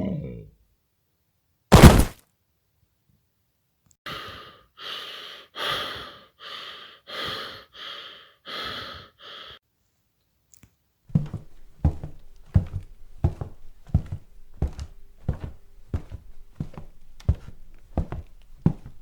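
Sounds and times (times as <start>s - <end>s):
dull thuds: 1.7s - 2.1s
heavy rhythmic breathing: 4.1s - 9.6s.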